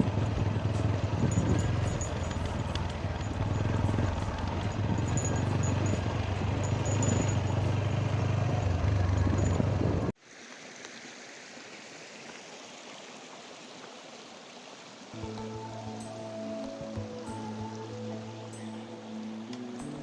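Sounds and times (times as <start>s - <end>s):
wind on microphone: 0.0s - 7.6s
motorcycle engine rumble: 0.0s - 10.2s.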